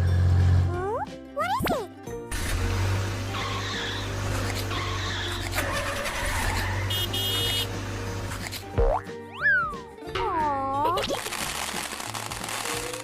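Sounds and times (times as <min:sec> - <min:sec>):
tyres skidding: 0:02.3 - 0:08.8
cartoon car engine running: 0:02.3 - 0:09.7.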